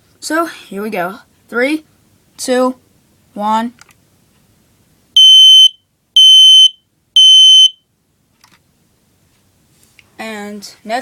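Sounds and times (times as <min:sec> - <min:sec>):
smoke alarm beeps: 0:05.2 - 0:07.8.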